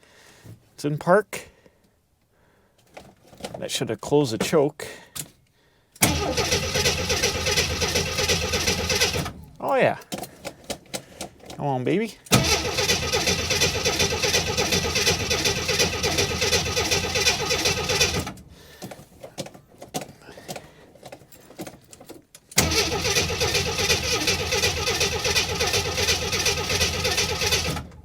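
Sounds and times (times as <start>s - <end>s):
starter cranking car engine: 6.0s - 9.6s, 12.3s - 18.9s, 22.5s - 28.0s.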